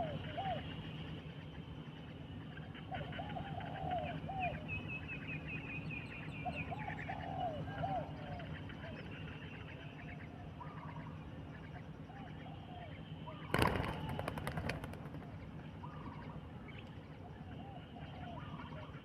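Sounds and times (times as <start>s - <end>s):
dove cooing: 0.0s - 0.6s, 6.8s - 8.4s, 13.5s - 16.1s
low background hum: 0.0s - 19.0s.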